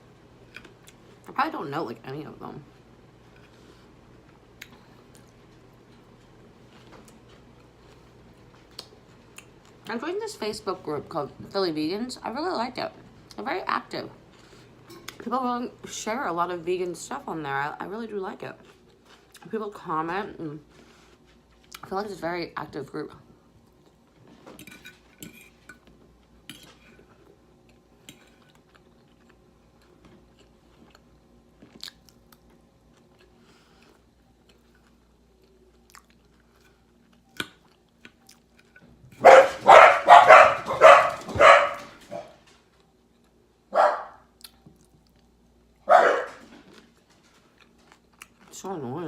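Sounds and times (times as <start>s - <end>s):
faint chewing and mouth clicks: 4.6s - 9.9s, 27.6s - 38.9s, 44.4s - 45.3s, 46.5s - 48.6s
dog barking: 39.2s - 42.4s, 43.7s - 44.3s, 45.9s - 46.4s.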